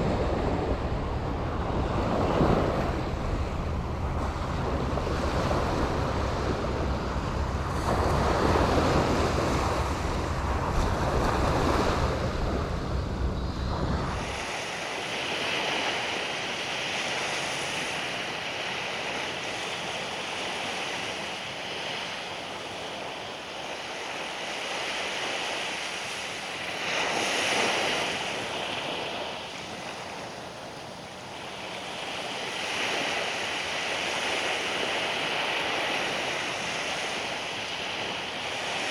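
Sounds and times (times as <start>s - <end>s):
wind buffeting microphone: 0.0s - 23.2s
surf washing onto beach: 0.0s - 38.9s.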